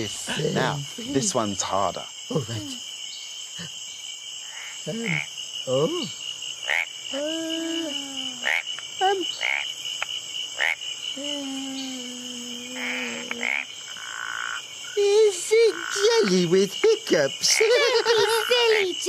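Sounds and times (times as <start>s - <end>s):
high insect chorus: 0.0s - 19.0s
frog croaking and chirping: 4.4s - 7.2s, 8.0s - 19.0s.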